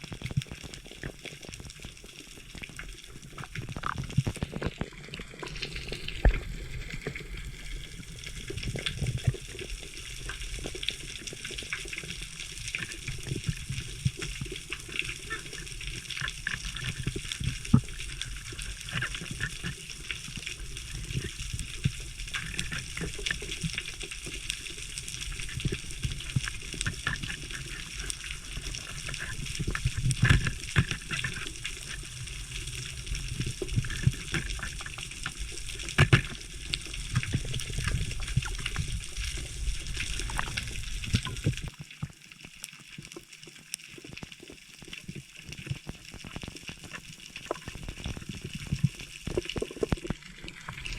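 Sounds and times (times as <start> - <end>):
water rushing and sloshing: 2.8 - 42.2.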